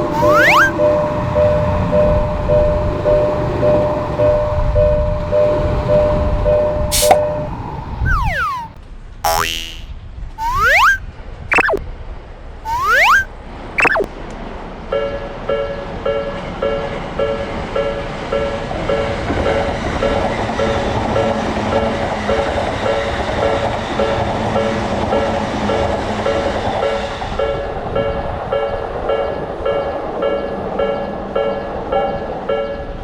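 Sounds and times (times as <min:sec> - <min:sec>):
railroad crossing bell ringing: 0:00.0 - 0:07.6, 0:14.9 - 0:23.0.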